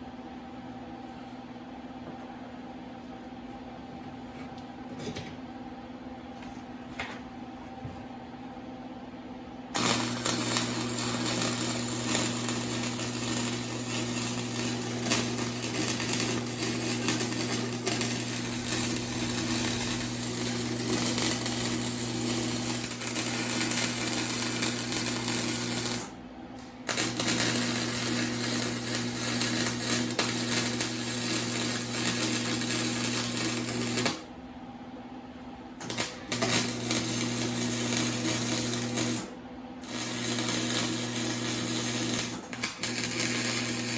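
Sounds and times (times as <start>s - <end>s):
electrical hum: 0.0s - 43.9s
arc welder crackling buzz: 9.7s - 34.4s, 35.6s - 43.9s.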